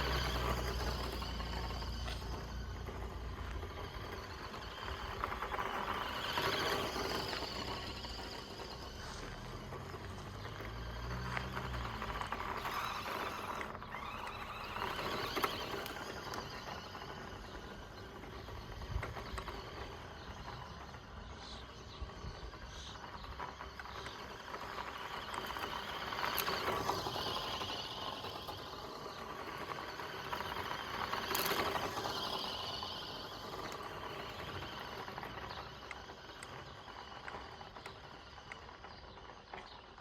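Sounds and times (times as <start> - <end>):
tyres crunching on dirt: 0.0 - 20.8
toy car motor whir: 0.0 - 40.0.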